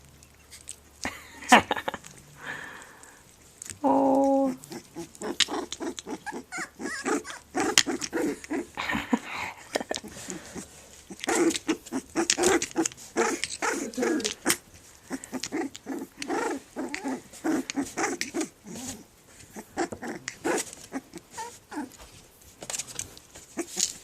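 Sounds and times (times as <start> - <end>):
puppy growling and yapping: 4.2 - 8.8, 9.6 - 22.0, 23.3 - 24.0.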